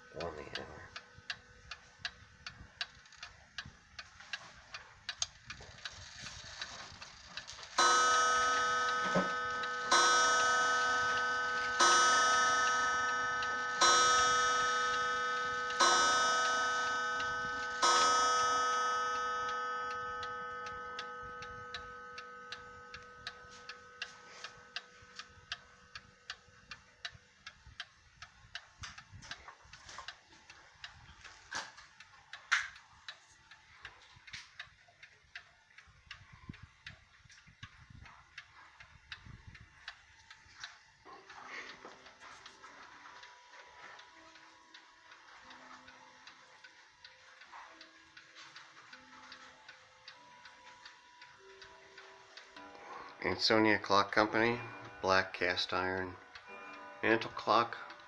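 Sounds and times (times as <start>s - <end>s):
mantel clock ticking: 0.0s - 58.0s
clock striking a gong: 7.8s - 24.9s, 50.3s - 58.0s.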